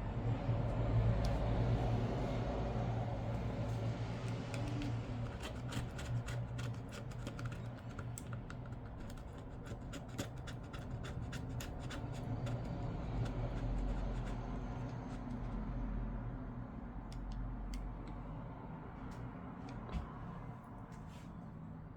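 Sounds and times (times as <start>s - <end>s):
steady low hum: 0.0s - 21.8s
hand tool scratching and clicking: 4.2s - 15.5s.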